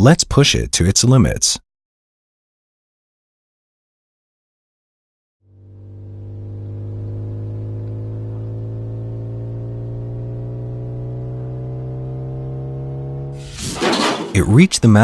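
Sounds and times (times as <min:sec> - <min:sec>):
car engine accelerating: 0:05.5 - 0:15.0.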